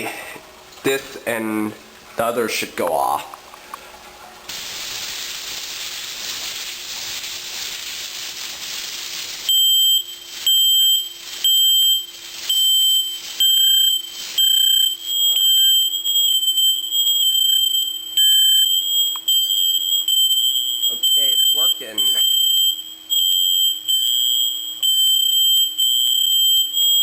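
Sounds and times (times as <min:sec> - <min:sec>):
aerosol spray hissing: 0:04.5 - 0:14.6
smoke alarm beeping: 0:04.5 - 0:27.0.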